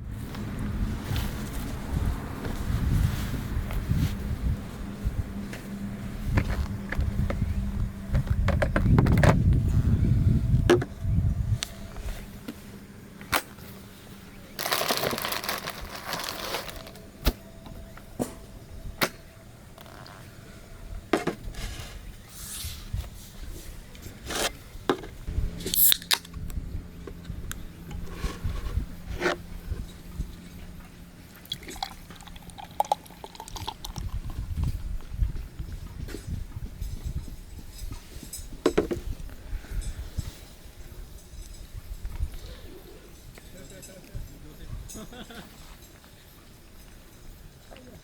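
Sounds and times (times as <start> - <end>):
liquid pouring: 31.5 - 34.4.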